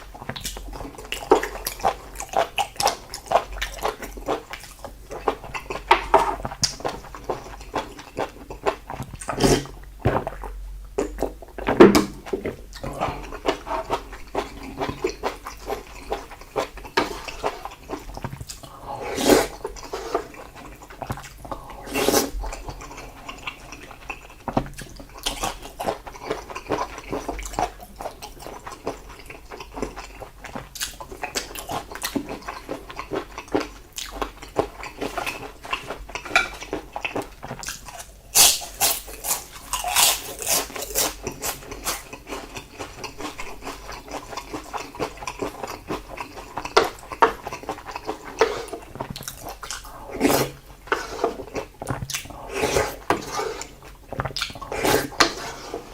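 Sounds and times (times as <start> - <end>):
chewing and mouth sounds: 0.0 - 55.5.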